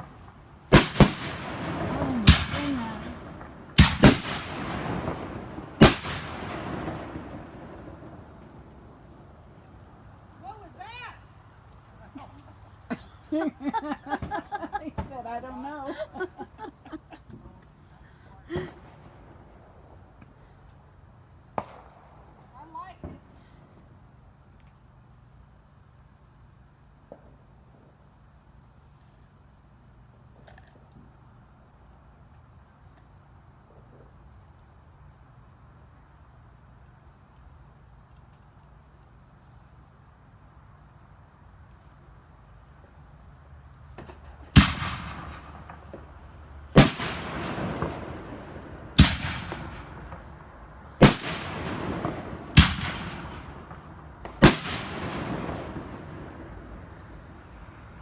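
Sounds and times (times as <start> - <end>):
fireworks bangs: 0.0 - 11.7, 12.3 - 17.6, 43.8 - 58.0.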